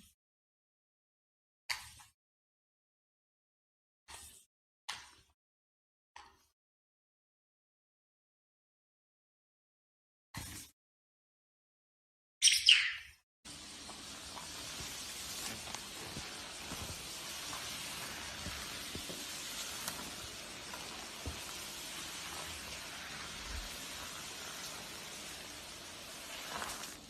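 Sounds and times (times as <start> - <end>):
bird's high call: 12.4 - 13.2
steady hiss: 13.5 - 27.0.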